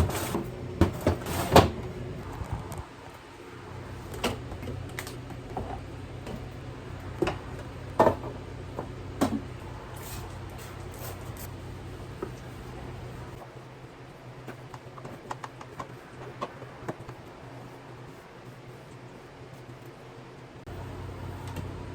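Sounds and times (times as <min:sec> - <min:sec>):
containers knocking and clunking: 0:00.0 - 0:01.9, 0:04.1 - 0:09.6
steady low hum: 0:00.0 - 0:21.9.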